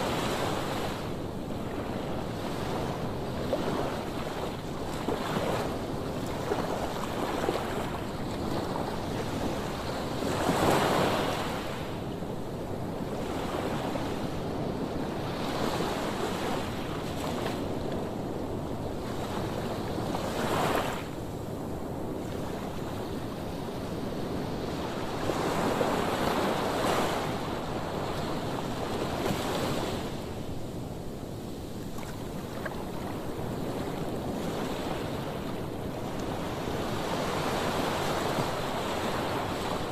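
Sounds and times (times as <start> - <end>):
sea waves breaking on beach: 21.9 - 39.9.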